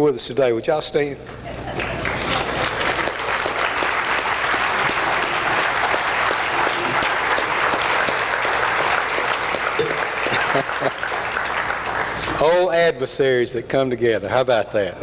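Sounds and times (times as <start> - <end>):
audience applauding: 1.3 - 12.7.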